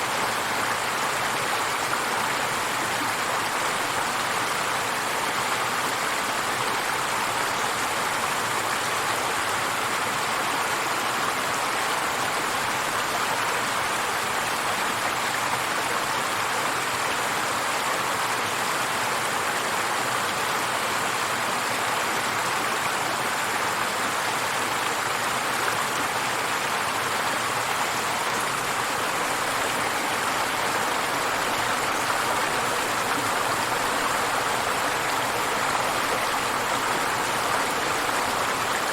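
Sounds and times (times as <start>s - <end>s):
river water rushing over rocks: 0.0s - 38.9s.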